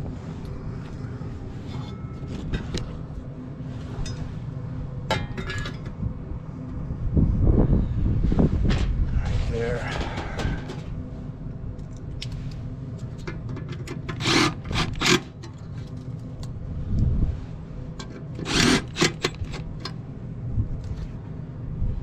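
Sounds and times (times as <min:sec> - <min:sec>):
steady low rumble: 0:00.0 - 0:22.0
hands scraping metal parts: 0:12.2 - 0:16.3, 0:18.0 - 0:20.0.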